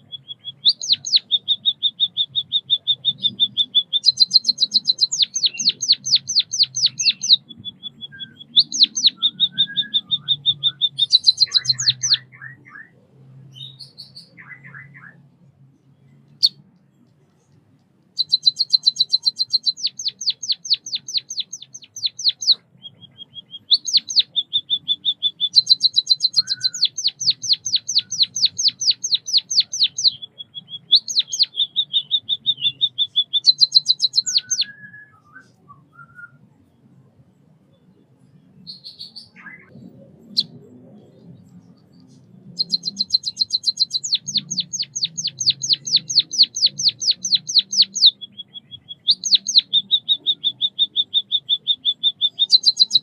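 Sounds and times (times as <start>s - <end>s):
soft bird calls: 0.0s - 53.0s.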